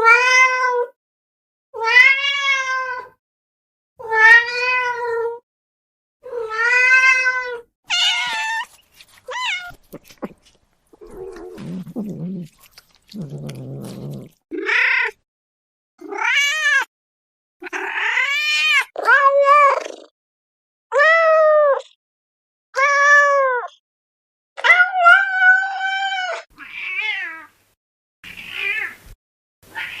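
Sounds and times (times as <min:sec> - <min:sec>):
cats meowing: 0:06.3 - 0:15.2, 0:29.7 - 0:30.0.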